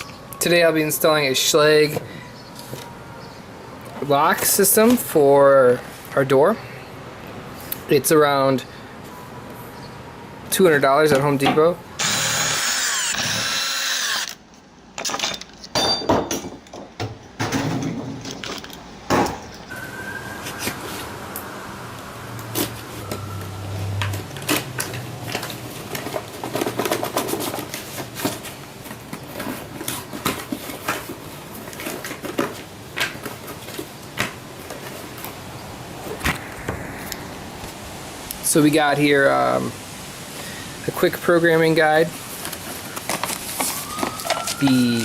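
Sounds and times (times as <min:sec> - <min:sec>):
power drill running: 0:12.0 - 0:14.4
packaging handled: 0:42.4 - 0:45.0.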